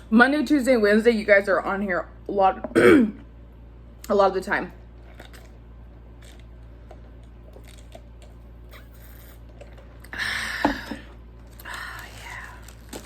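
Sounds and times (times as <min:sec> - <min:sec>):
chewing and mouth clicks: 0:06.2 - 0:10.1.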